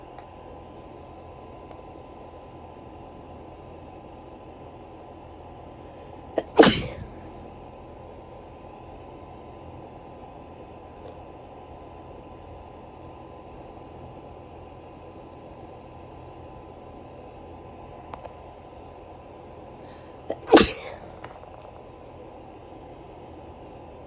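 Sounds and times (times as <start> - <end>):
woman sneezing: 6.4 - 7.2, 20.3 - 21.1.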